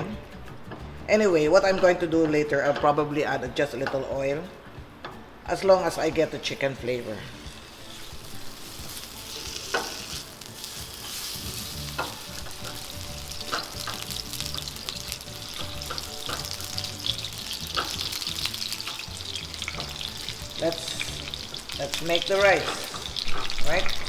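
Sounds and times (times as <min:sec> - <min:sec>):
fat sizzling in a hot pan: 0:07.0 - 0:24.0.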